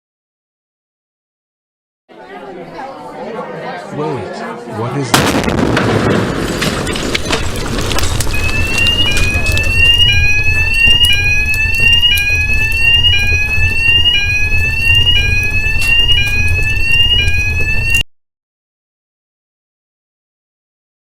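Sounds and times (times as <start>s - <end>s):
electronic alarm rising tone: 8.0s - 18.1s.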